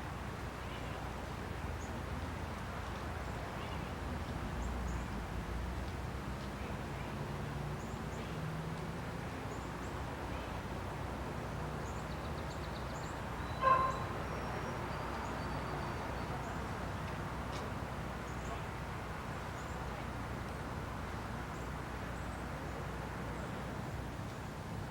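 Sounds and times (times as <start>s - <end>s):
faint high bird chirps: 12.5s - 16.4s.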